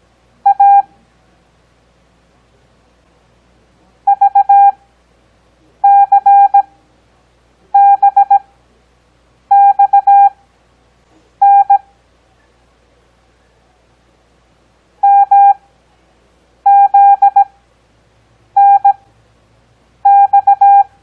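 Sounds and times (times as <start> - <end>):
morse code beeps: 0.4 - 0.9, 4.1 - 4.8, 5.8 - 6.7, 7.8 - 8.4, 9.5 - 10.4, 11.4 - 11.8, 15.0 - 15.6, 16.7 - 17.5, 18.6 - 19.0, 20.0 - 20.9.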